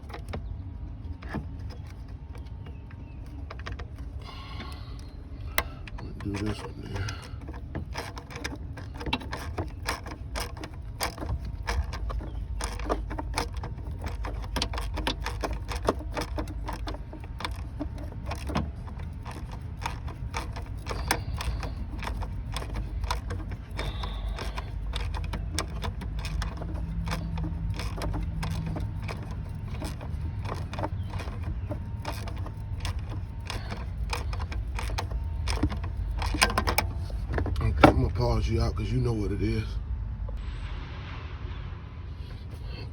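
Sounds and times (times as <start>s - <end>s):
ratchet wrench clicking: 3.6s - 37.6s.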